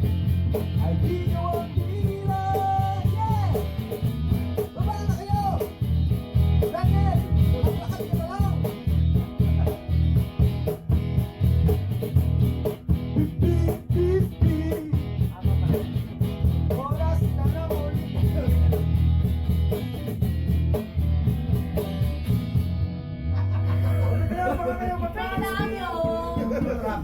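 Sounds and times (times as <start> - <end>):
steady beat: 0.0 - 22.8, 23.7 - 27.0
strummed guitar: 0.0 - 27.0
person singing: 0.8 - 3.7, 13.2 - 15.0, 23.7 - 27.0.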